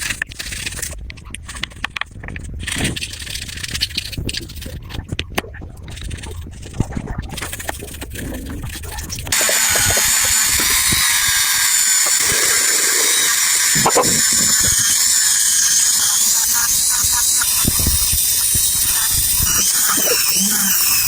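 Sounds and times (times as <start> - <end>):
abrasive tool hissing on metal: 9.3 - 21.0.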